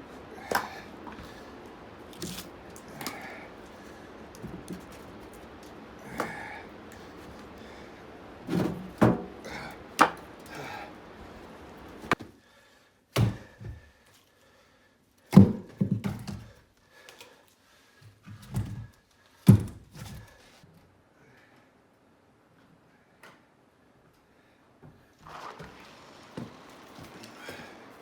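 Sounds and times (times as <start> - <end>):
firewood pieces knocking together: 0.2 - 7.7, 8.5 - 10.7.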